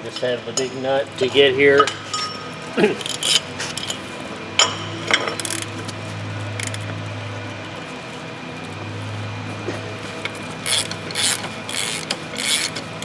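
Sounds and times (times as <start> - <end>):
steady low hum: 0.0 - 13.0
metal tools clinking: 0.1 - 6.9.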